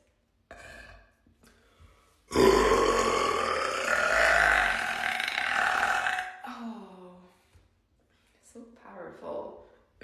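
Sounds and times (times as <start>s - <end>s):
woman burping: 0.5s - 1.1s, 2.3s - 7.0s.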